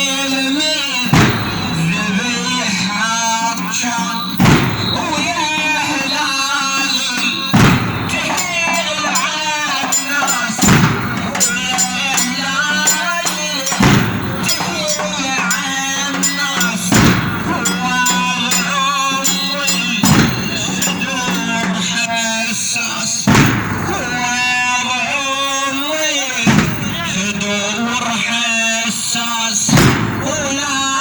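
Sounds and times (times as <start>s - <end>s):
man chanting a lament: 0.0s - 31.0s
collective chest-beating strikes: 1.0s - 3.0s, 4.2s - 22.0s, 23.2s - 24.4s, 26.5s - 27.4s, 29.7s - 30.6s.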